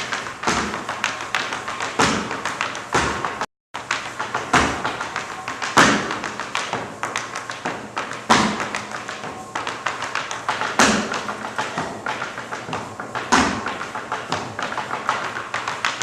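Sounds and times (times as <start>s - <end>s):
tap shoes on a stage floor: 0.0s - 16.0s.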